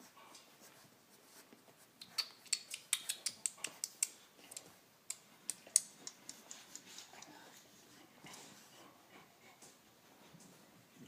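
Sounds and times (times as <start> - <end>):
sharp clicks and taps: 2.0 - 7.3.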